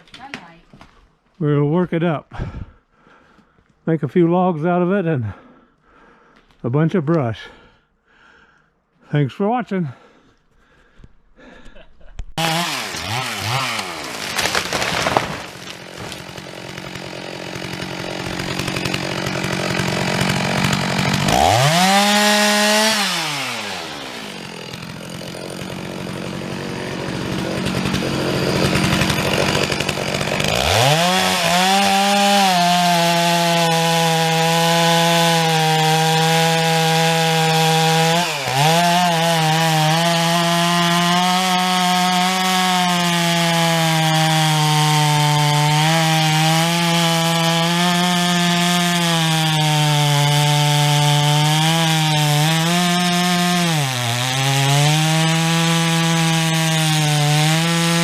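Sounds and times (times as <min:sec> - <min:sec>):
chainsaw revving: 0:12.4 - 0:58.0.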